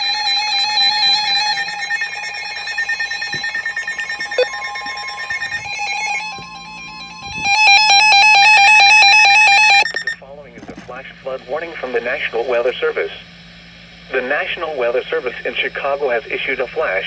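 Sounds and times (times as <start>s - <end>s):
electronic warbling alarm tones: 0.0s - 10.2s
rapid on-off beeping: 0.0s - 10.2s.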